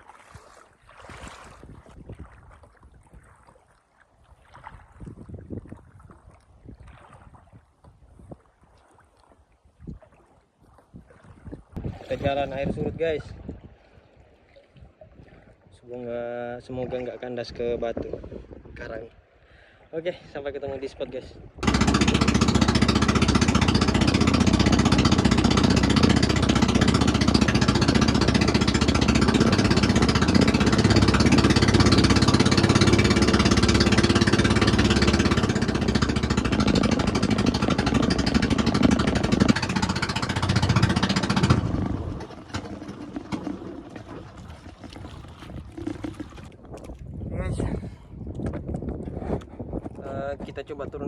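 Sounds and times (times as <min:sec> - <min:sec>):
boat engine rattly drone: 0:21.6 - 0:44.8.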